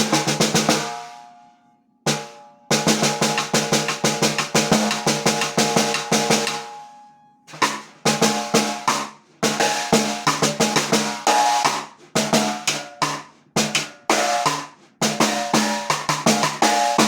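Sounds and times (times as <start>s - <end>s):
snare drum runs: 2.1s - 6.8s.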